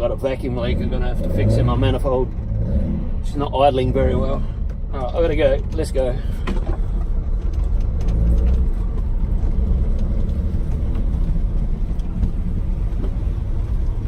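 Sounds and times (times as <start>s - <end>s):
car engine deep rumble: 0.0s - 14.0s.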